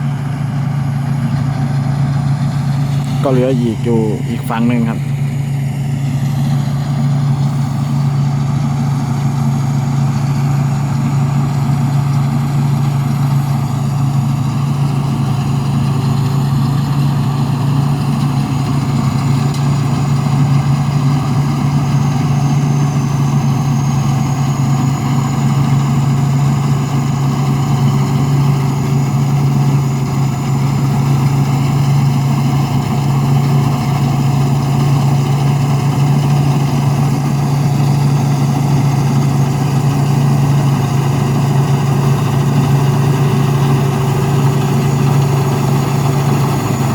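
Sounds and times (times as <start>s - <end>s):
faint high turbo whine: 0.0s - 16.1s
combine harvester diesel engine: 0.0s - 46.9s.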